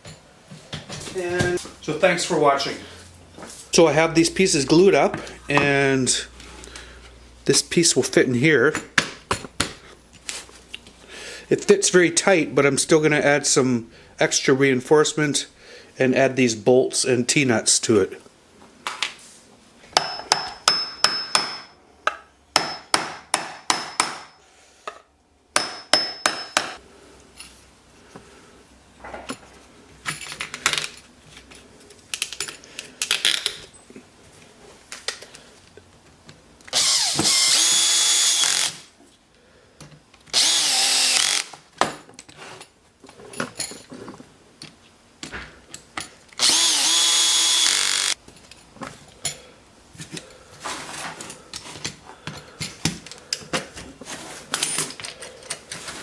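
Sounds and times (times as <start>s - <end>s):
power drill boring into wood: 36.7s - 38.9s, 40.3s - 41.5s, 46.4s - 48.2s.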